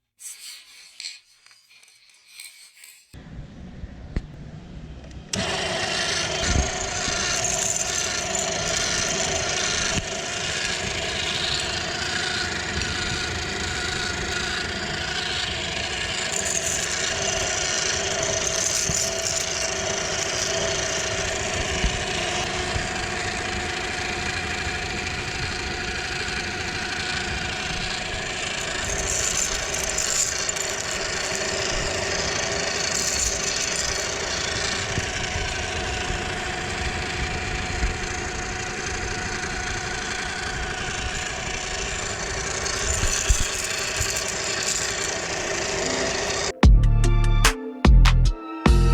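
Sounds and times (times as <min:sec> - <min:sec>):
grinding candies crackle: 0:00.3 - 0:03.2, 0:05.4 - 0:46.5
meat grinder motor humming: 0:05.3 - 0:46.6.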